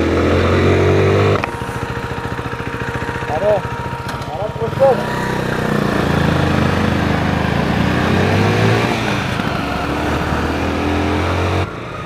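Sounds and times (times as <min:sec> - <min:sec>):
motorcycle engine accelerating: 0:00.0 - 0:12.0.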